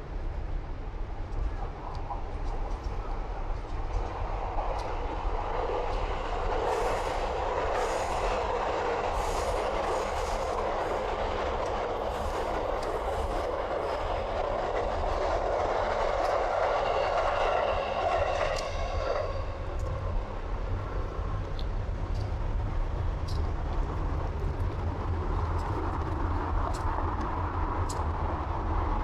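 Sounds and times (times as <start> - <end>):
train rumble: 0.0 - 29.0
train wheels clattering: 22.1 - 28.3.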